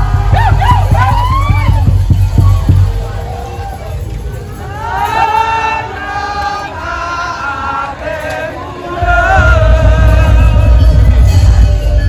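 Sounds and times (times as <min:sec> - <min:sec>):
heavy bass drum beat: 0:00.0 - 0:03.8, 0:09.0 - 0:12.0.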